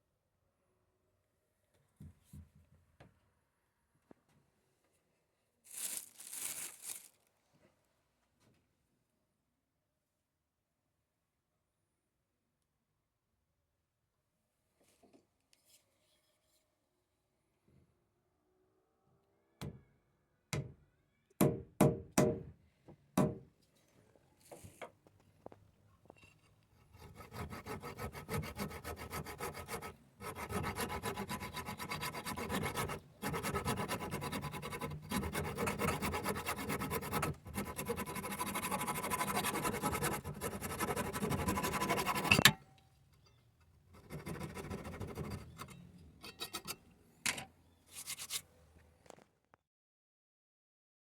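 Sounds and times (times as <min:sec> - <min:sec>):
hand tool rasping wood: 0:27.0 - 0:42.5.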